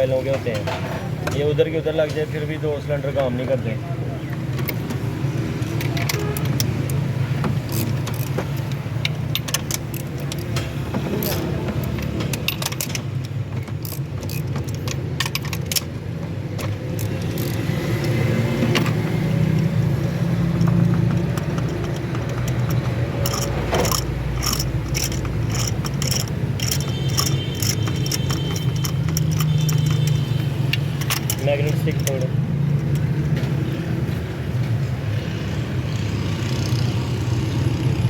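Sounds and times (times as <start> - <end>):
metal tools clinking: 4.5 - 33.8.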